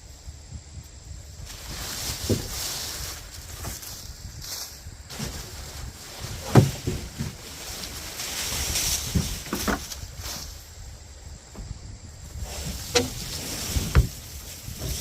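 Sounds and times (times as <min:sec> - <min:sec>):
twigs and leaves rustling: 0:01.1 - 0:15.0
woody thuds of tossed limbs: 0:01.4 - 0:15.0.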